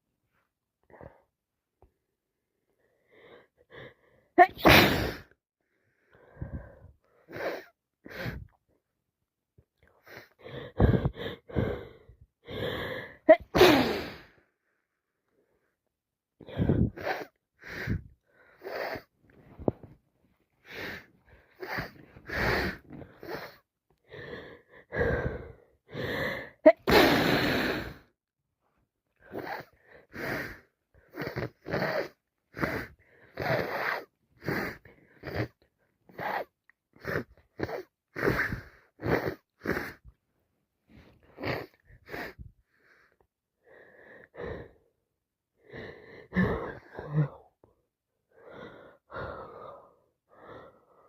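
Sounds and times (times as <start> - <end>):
wheezy gasping breaths: 2.8 - 8.6, 9.8 - 14.5, 16.4 - 19.9, 20.6 - 28.1, 29.2 - 40.2, 40.9 - 44.9, 45.6 - 47.6, 48.3 - 51.0
person sneezing: 4.4 - 5.3, 13.3 - 14.2, 26.7 - 27.8.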